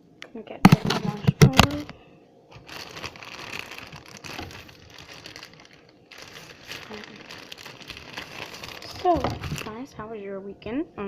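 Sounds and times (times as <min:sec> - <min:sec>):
plastic bag crinkling: 0:02.5 - 0:09.9.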